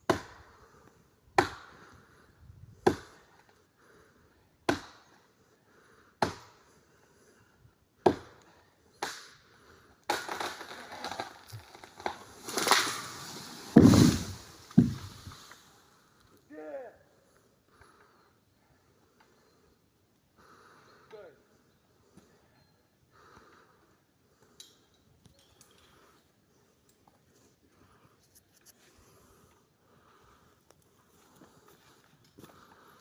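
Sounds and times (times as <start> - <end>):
axe chopping wood: 1.4 - 1.7, 2.8 - 3.1, 4.7 - 5.0, 6.2 - 6.5, 8.0 - 8.4, 13.8 - 15.1
wood cracking and splintering: 10.1 - 15.3
heavy thud: 13.7 - 15.3.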